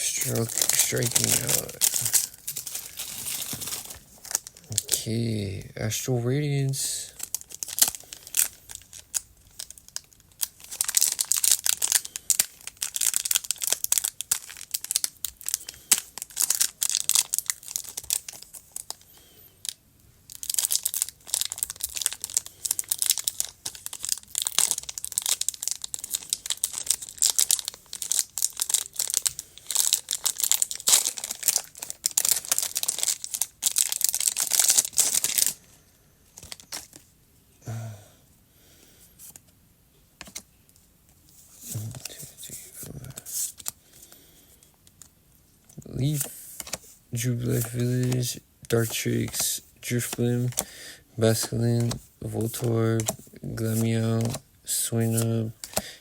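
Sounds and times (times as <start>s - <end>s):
foil wrapper crinkling and tearing: 0.0s - 5.4s, 7.0s - 35.6s, 36.4s - 37.0s.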